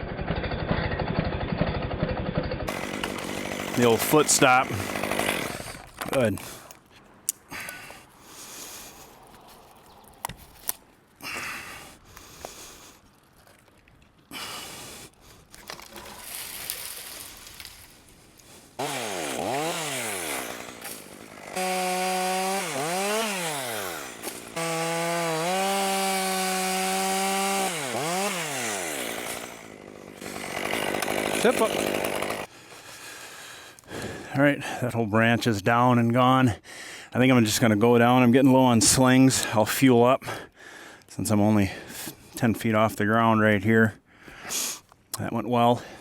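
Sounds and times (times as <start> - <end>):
chainsaw revving and cutting: 0.3 - 6.0, 18.8 - 32.5.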